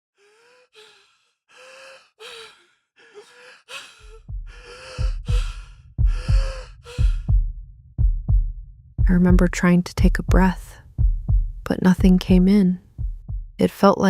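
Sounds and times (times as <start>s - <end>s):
wheezing breaths: 0.1s - 7.4s
low heartbeat thump: 4.0s - 13.6s.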